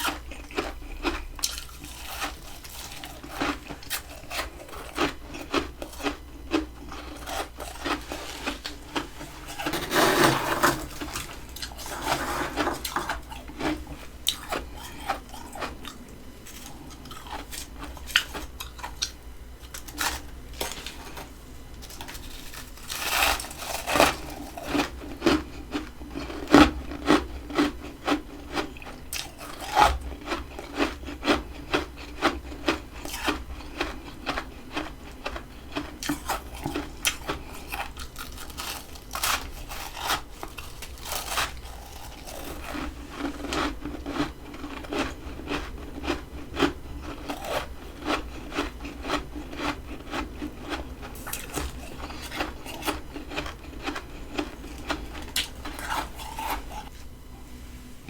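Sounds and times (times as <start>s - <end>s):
freezer frost being scraped: 0.0s - 15.8s, 19.7s - 25.6s, 36.0s - 45.9s, 47.0s - 56.9s.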